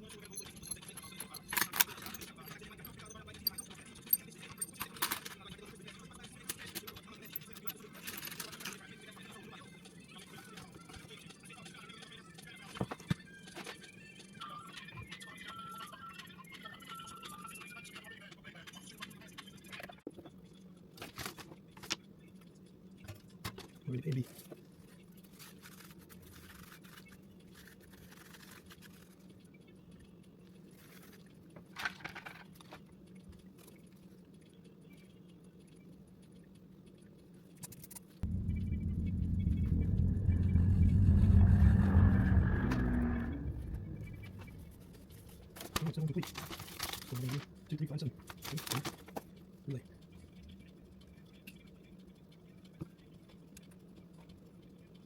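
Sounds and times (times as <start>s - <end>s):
small metal parts clinking: 0.0s - 5.5s, 6.5s - 8.8s
faint hum: 38.2s - 45.9s.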